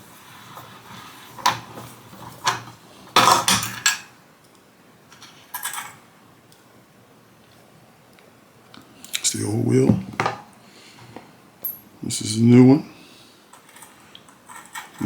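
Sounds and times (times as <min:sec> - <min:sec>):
metal tools and hardware clinking: 0:05.5 - 0:06.0, 0:11.6 - 0:11.9, 0:13.5 - 0:15.0.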